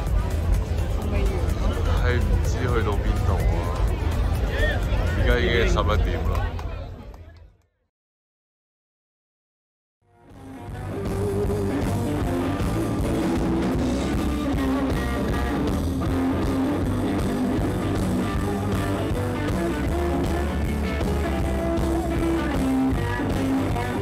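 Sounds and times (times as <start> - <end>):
rock music with guitar and drums: 10.1 - 24.0.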